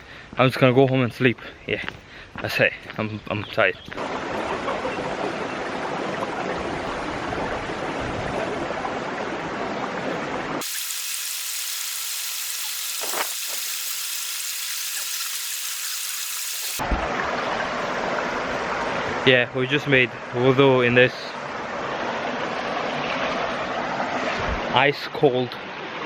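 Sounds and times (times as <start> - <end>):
rushing stream water: 5.5 - 19.2, 21.4 - 24.4.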